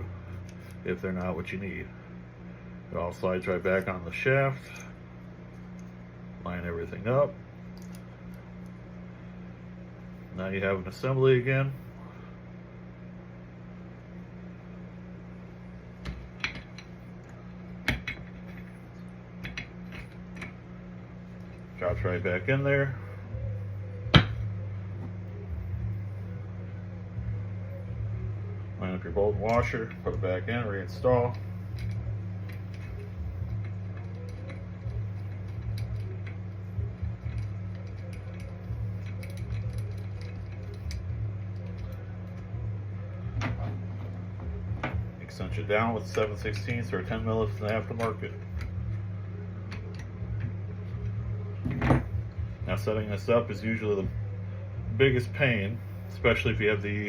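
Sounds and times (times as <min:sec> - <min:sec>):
steady low hum: 0:00.0 - 0:57.0
metal clutch parts clinking: 0:37.2 - 0:42.4.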